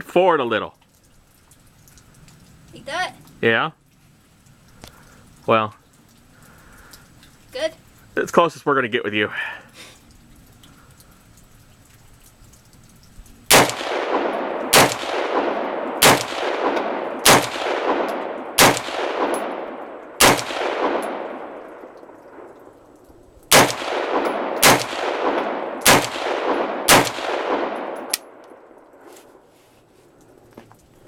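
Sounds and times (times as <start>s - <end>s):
rifle shots with echoing tail: 13.5s - 29.4s.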